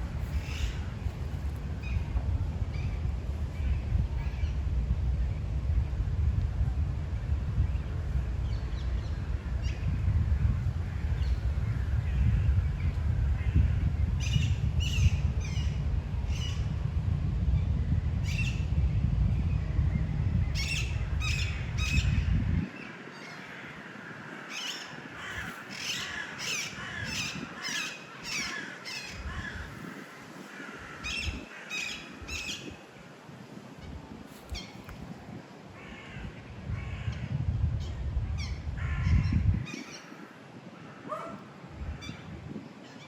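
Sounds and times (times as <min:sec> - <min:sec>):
wind rumble on microphone: 0:00.0 - 0:43.0
birds giving harsh calls: 0:24.4 - 0:30.2.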